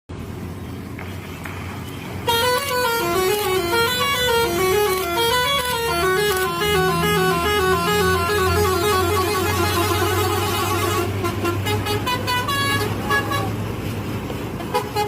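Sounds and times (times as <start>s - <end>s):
low engine hum: 0.1s - 15.0s
musical bus horn melody: 2.2s - 13.6s, 14.6s - 15.0s.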